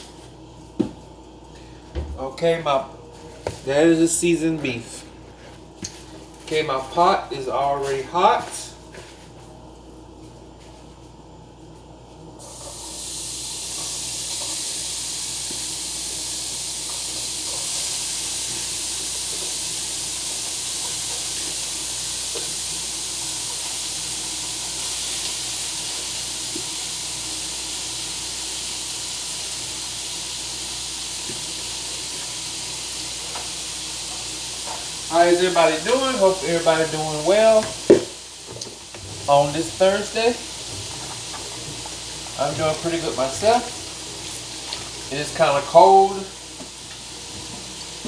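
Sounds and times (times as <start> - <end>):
ground beef sizzling in a pot: 12.4 - 48.0.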